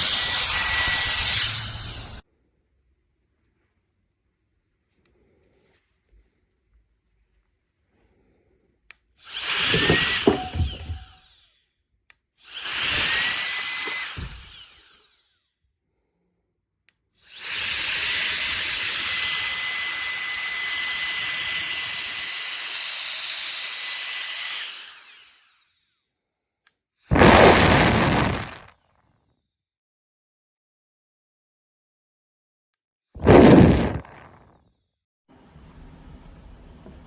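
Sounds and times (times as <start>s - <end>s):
electric air duster blowing: 0.0s - 2.2s, 9.3s - 11.4s, 12.5s - 15.0s, 27.1s - 28.7s, 33.2s - 34.4s.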